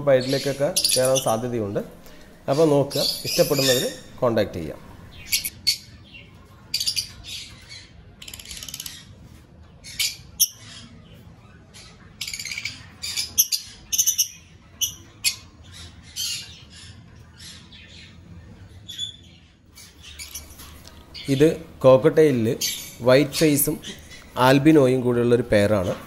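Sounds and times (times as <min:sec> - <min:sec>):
lovebirds chirping and squawking: 0:00.0 - 0:26.0.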